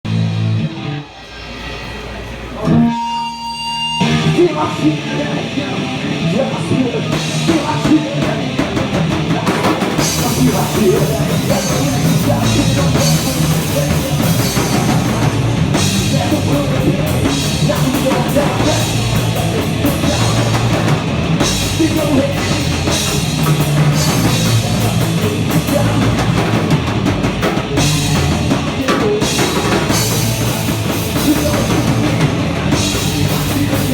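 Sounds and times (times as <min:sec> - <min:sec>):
rock band playing: 0:00.0 - 0:33.9
short held tone: 0:01.2 - 0:05.3.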